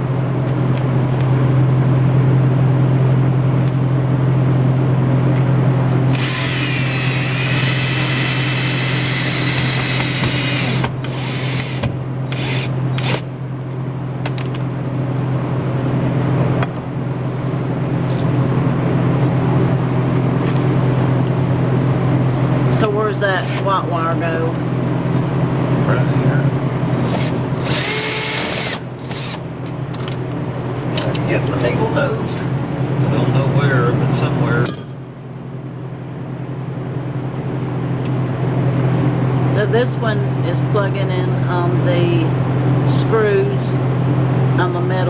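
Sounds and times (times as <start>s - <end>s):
steady low hum: 0.0s - 45.0s
power drill running: 6.1s - 13.3s, 27.0s - 29.5s.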